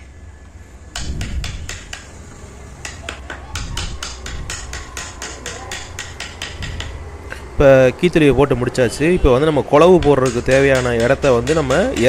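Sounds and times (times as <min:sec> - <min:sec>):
mallet tapping on chisel: 0:00.9 - 0:02.2, 0:02.8 - 0:07.0, 0:09.8 - 0:12.0.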